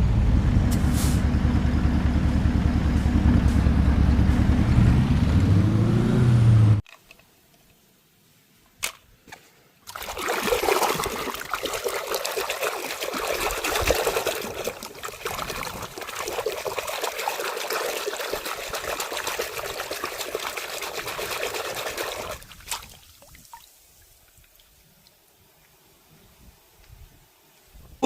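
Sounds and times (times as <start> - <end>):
water running: 9.9 - 24.7.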